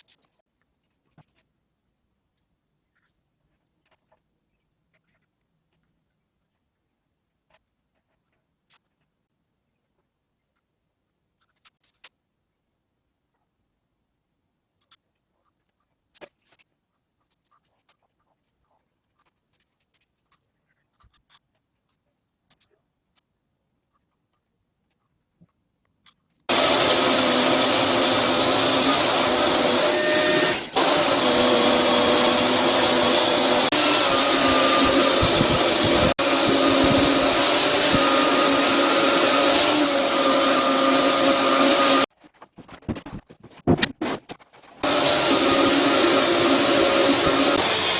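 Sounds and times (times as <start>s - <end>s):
woodworking machine motor whine: 26.5s - 42.1s, 44.8s - 47.9s.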